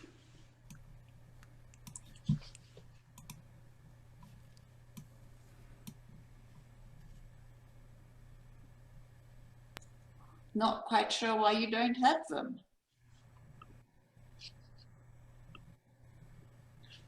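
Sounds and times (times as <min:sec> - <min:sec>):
low steady hum: 0:00.0 - 0:17.0
computer clicks: 0:01.7 - 0:02.4, 0:03.1 - 0:03.4.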